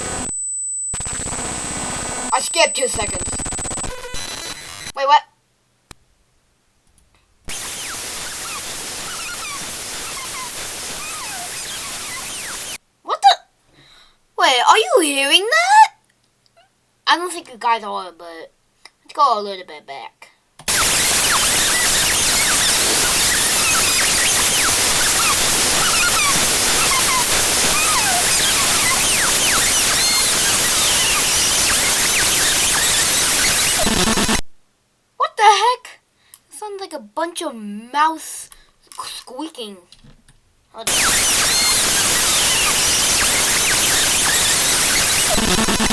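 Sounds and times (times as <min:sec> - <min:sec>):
loud static hiss: 0:00.0 - 0:05.0, 0:07.4 - 0:12.8, 0:20.6 - 0:34.4, 0:40.8 - 0:45.9
squeaky chirps sliding in pitch: 0:07.8 - 0:12.8, 0:21.2 - 0:31.2.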